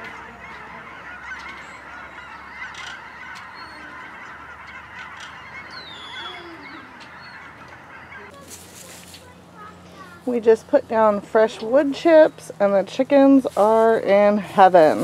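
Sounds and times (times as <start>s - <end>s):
higher bird calls: 0.0s - 8.4s
flock of birds calling: 0.0s - 15.0s.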